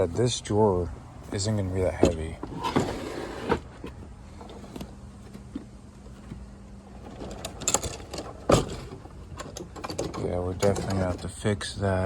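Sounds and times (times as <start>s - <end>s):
drawer rolling on caster wheels: 1.8s - 5.5s, 6.1s - 11.4s.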